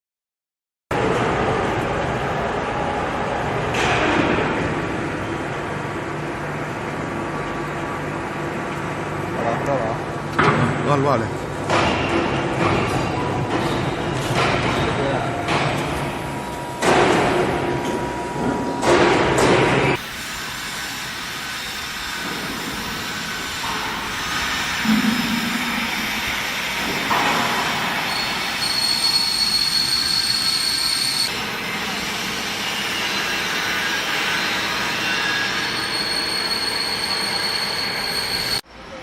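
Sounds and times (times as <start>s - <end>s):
loud metal clank: 24.8s - 28.5s
metal cutting squeal: 27.8s - 31.4s, 32.2s - 38.6s.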